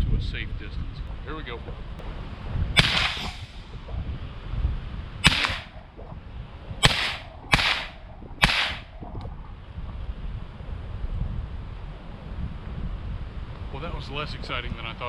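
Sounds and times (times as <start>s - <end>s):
rifle shots with echo: 2.8s - 3.6s, 5.2s - 5.8s, 6.8s - 8.9s.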